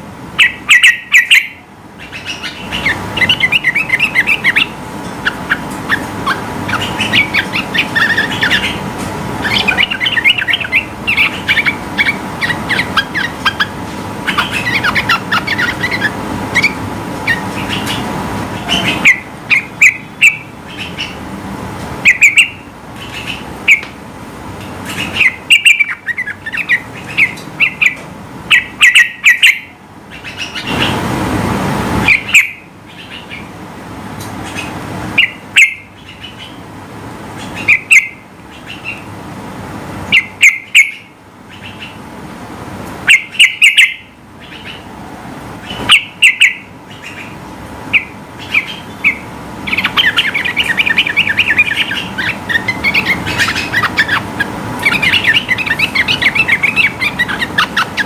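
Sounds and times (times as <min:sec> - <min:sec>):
bird chirping and chattering: 0:00.4 - 0:21.2, 0:22.0 - 0:23.9, 0:24.6 - 0:31.0, 0:32.0 - 0:33.5, 0:34.2 - 0:36.7, 0:37.3 - 0:39.1, 0:40.1 - 0:42.0, 0:43.1 - 0:44.9, 0:45.6 - 0:58.0
rush of noise: 0:30.5 - 0:32.4.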